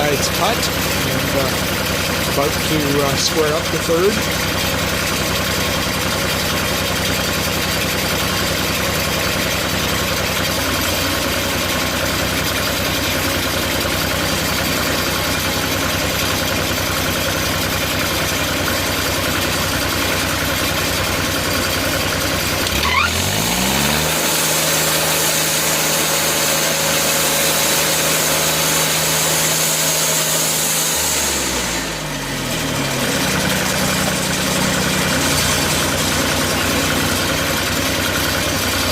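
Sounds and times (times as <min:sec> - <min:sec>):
sawmill engine idling and revving: 0:00.0 - 0:38.9.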